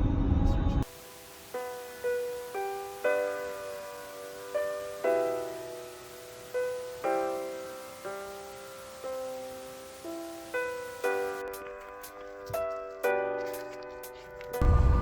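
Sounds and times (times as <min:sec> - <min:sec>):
loud rushing noise: 0:14.6 - 0:15.0.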